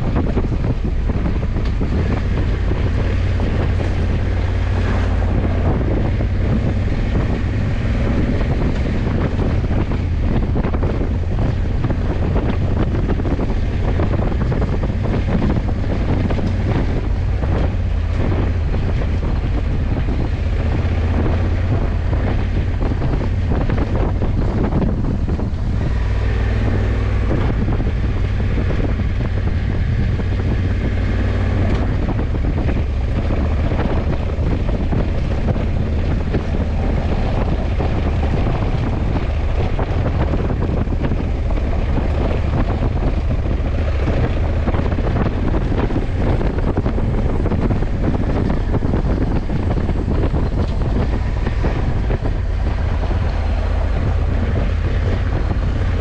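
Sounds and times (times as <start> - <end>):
motorcycle engine droning: 0.0 - 56.0
road noise: 0.0 - 56.0
wind rushing over microphone: 0.0 - 56.0.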